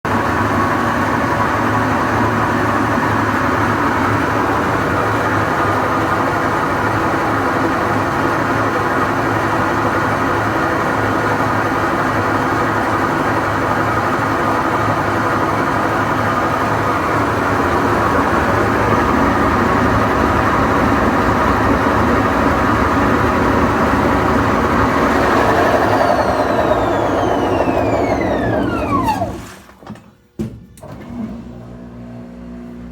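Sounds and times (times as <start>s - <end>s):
washing machine mechanical noise: 0.1s - 32.9s
drum winding down whine: 17.8s - 29.5s.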